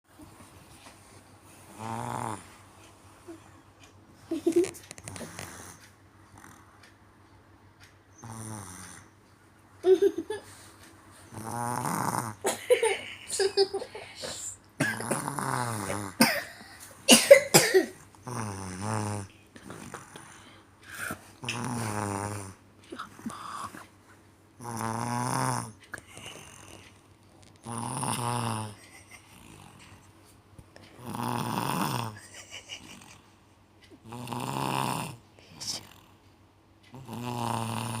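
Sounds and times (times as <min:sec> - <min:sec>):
man snoring: 0:01.7 - 0:02.4, 0:08.2 - 0:09.1, 0:11.3 - 0:12.4, 0:14.9 - 0:16.2, 0:18.2 - 0:19.3, 0:21.4 - 0:22.6, 0:24.6 - 0:26.8, 0:27.6 - 0:28.8, 0:31.0 - 0:32.2, 0:34.0 - 0:36.0, 0:36.9 - 0:38.0
loud snorts: 0:01.7 - 0:02.5, 0:08.2 - 0:09.1, 0:11.3 - 0:12.4, 0:14.8 - 0:16.2, 0:18.2 - 0:19.3, 0:21.0 - 0:22.6, 0:24.6 - 0:26.8, 0:27.6 - 0:29.9, 0:31.0 - 0:32.2, 0:34.0 - 0:35.2, 0:36.9 - 0:38.0.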